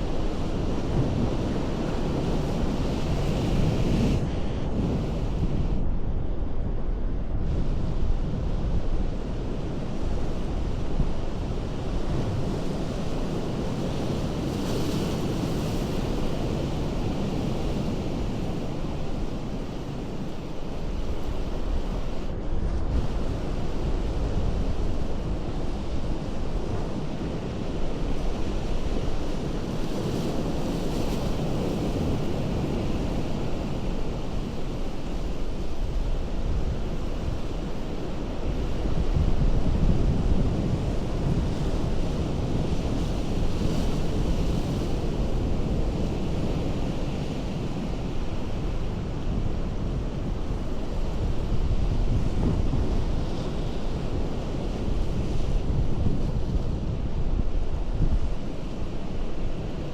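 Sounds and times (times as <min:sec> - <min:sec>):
ocean surf on rocky shore: 0:00.0 - 0:59.9.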